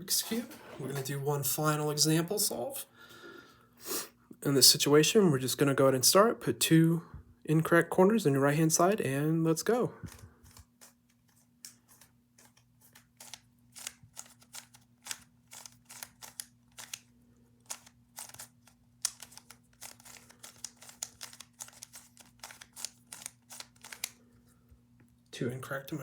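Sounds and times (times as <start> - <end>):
faint steady hum: 0.0 - 26.0
plastic puzzle cube clicking: 13.2 - 24.2.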